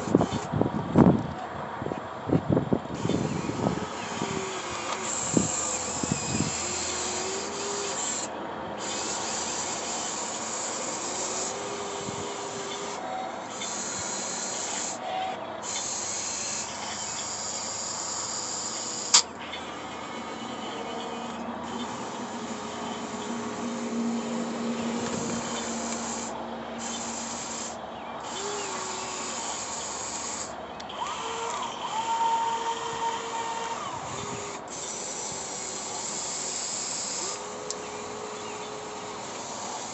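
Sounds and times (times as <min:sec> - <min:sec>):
toy excavator motor whirring: 0:00.0 - 0:01.4, 0:02.9 - 0:39.9
sharp click: 0:19.1 - 0:19.3.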